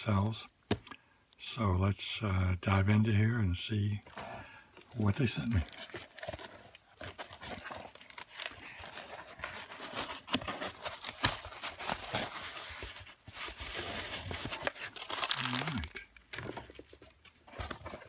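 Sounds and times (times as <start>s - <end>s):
packing material crinkling and tearing: 4.1s - 18.0s.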